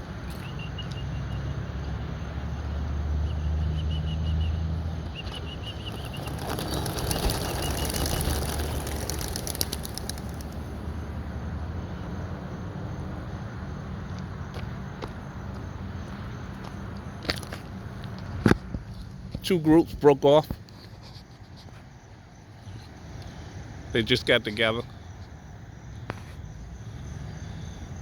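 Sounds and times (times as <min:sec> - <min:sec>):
pigeons wings flapping: 0:05.3 - 0:10.8.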